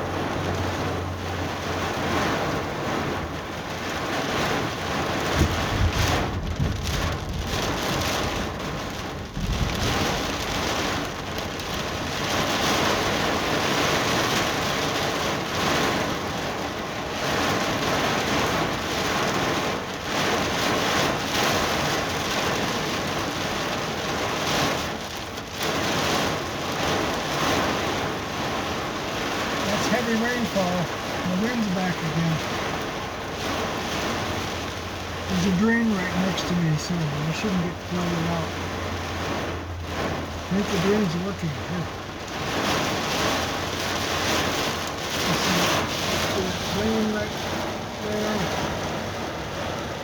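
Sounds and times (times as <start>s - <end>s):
low rumbling thunder: 0.0s - 25.0s
gusting wind: 0.0s - 50.0s
heavy rain pouring: 0.0s - 50.0s.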